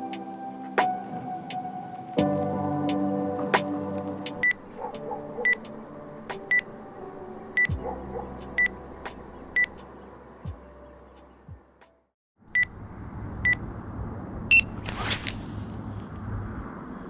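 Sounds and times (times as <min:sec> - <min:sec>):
brief rushing noise: 0:14.7 - 0:16.5.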